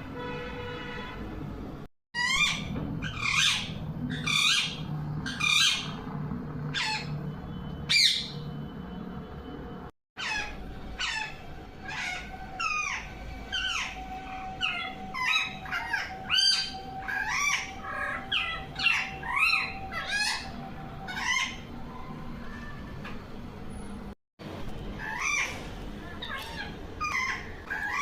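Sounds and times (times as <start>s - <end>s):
parrot squawking: 2.2s - 7.3s, 7.9s - 8.4s, 10.2s - 23.1s, 25.0s - 28.0s.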